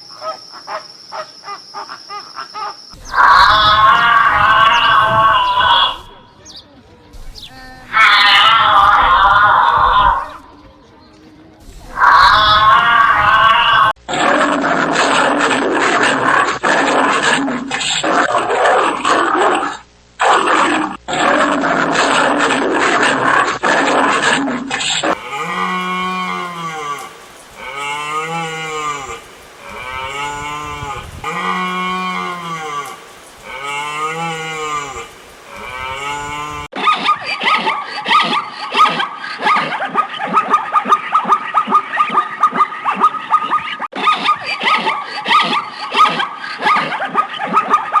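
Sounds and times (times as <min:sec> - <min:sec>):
cow mooing: 0:25.1 - 0:36.7.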